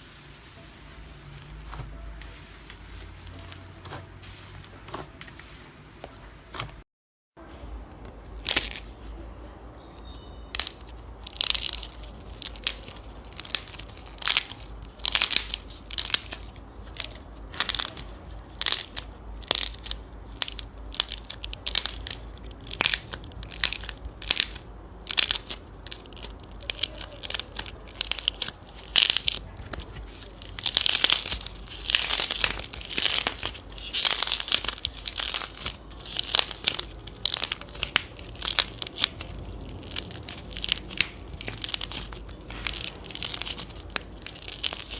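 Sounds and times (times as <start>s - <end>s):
slime crackling and crunching: 7.5s - 44.9s.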